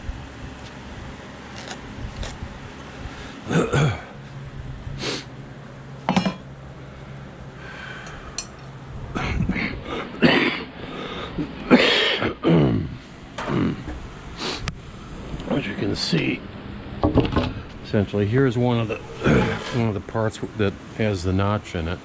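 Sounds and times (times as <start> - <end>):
man clearing throat and mumbling: 3.4 - 4.2, 9.2 - 10.7, 11.7 - 13.9, 19.1 - 19.8.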